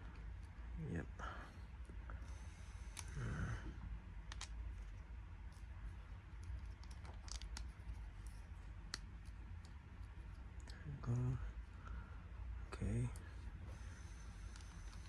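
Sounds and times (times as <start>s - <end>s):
plastic toy parts clicking: 4.3s - 4.9s, 6.4s - 10.8s.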